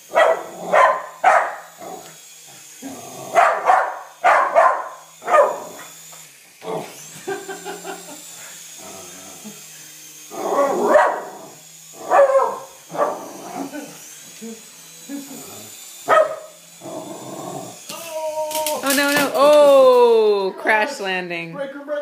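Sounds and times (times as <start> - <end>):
toy helicopter motor whining: 0.0 - 21.3
dog barking: 0.1 - 1.7, 3.3 - 5.9, 10.4 - 11.4, 12.0 - 13.3, 16.1 - 16.6.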